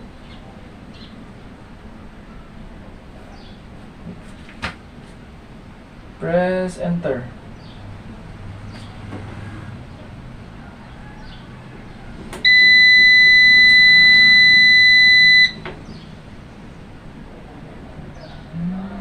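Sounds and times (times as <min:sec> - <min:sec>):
high-pitched buzzer beep: 0:12.5 - 0:15.7.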